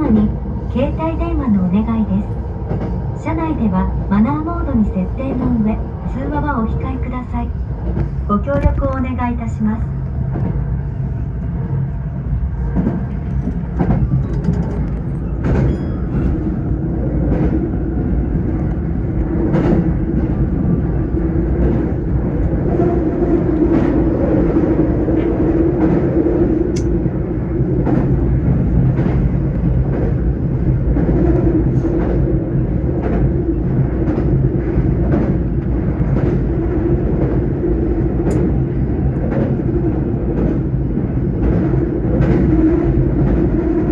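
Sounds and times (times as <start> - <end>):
train rolling rumble and hum: 0.0 - 43.9.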